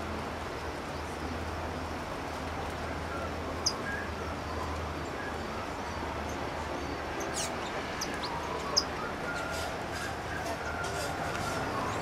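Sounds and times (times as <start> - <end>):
small birds chirping: 0.6 - 12.0
bird whistles: 7.3 - 12.0.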